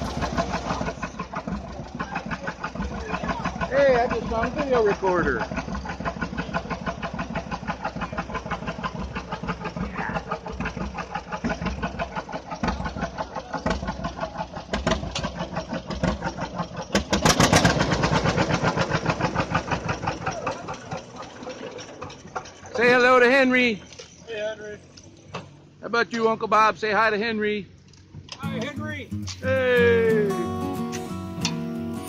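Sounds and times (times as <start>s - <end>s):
tractor engine running: 0.0s - 32.0s.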